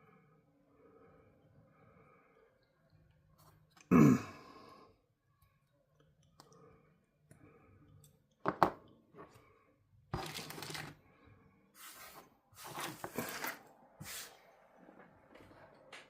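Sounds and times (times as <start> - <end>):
small tools rustling and scraping: 10.1 - 11.0, 11.8 - 14.3.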